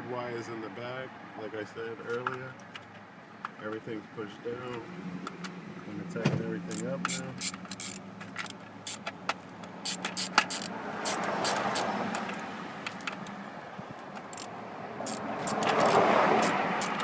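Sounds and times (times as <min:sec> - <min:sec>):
passing car: 0:04.2 - 0:17.0
metal tool clicks and clinks: 0:06.7 - 0:09.2, 0:09.8 - 0:13.4, 0:14.2 - 0:14.5, 0:15.1 - 0:17.0.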